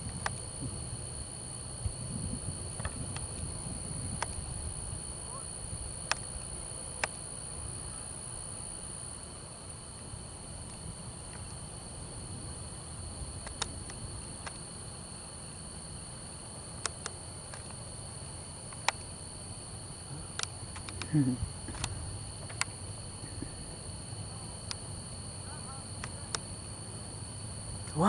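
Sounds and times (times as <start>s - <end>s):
night insects trilling: 0.0s - 28.0s
sharp clicks: 13.4s - 14.6s, 18.7s - 19.1s, 20.3s - 21.1s, 21.7s - 22.8s.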